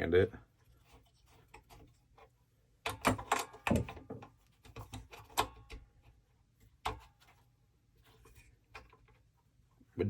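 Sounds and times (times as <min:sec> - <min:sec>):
parts clicking and clattering: 0:01.4 - 0:06.0.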